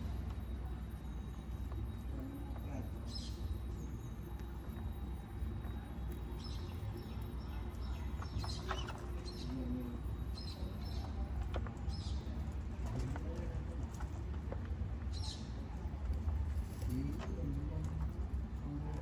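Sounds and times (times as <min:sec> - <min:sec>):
birds chirping: 0:02.6 - 0:04.1, 0:06.0 - 0:12.5.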